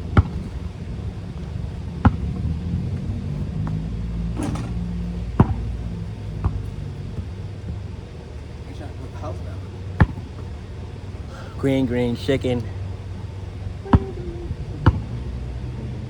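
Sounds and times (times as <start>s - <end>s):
basketball bouncing on pavement: 0.0s - 8.7s, 9.6s - 11.3s, 12.2s - 15.3s
low rumble: 9.6s - 16.0s.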